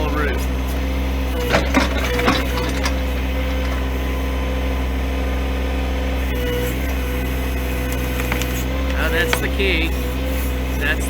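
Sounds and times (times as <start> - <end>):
tractor diesel engine running: 0.0 - 11.0
wood cracking and knocking: 1.4 - 4.1, 8.0 - 9.6.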